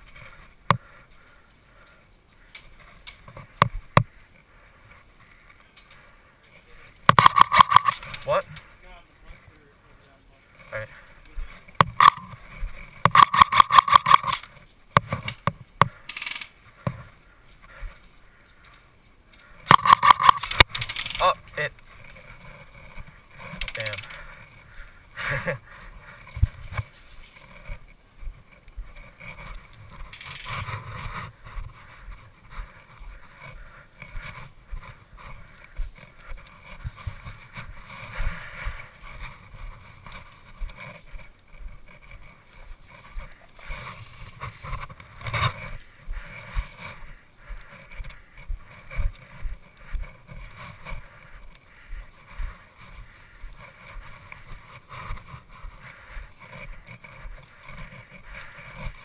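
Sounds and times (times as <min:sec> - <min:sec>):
gear rustling against camera: 0:00.0 - 0:09.4, 0:10.5 - 0:59.0.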